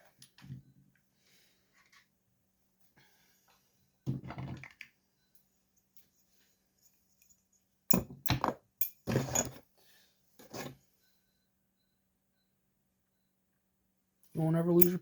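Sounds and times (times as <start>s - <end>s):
tools clattering on workbench: 7.9s - 9.6s.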